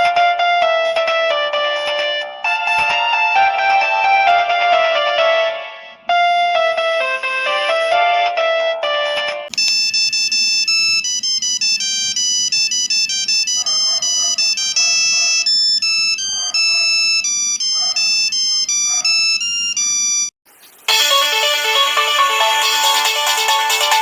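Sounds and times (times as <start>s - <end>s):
mobile phone ringtone beeping: 9.0s - 20.3s.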